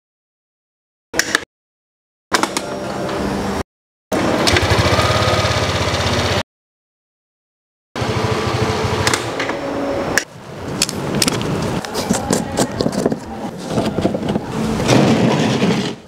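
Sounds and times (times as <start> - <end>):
motorbike engine idling: 4.2 - 6.4, 8.0 - 9.1.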